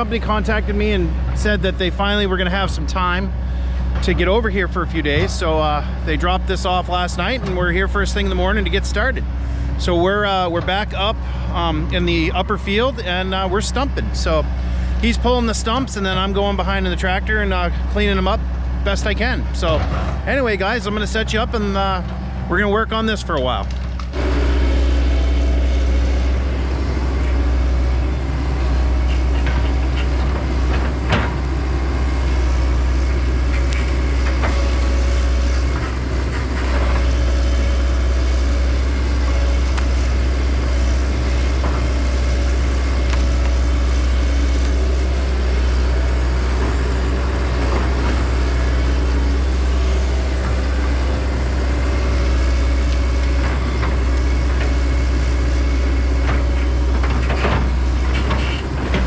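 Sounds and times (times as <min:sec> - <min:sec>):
heavy diesel machinery running: 0:00.0 - 0:59.0
knocks and clunks: 0:05.0 - 0:05.6, 0:19.5 - 0:20.4, 0:29.0 - 0:31.6, 0:56.2 - 0:59.0.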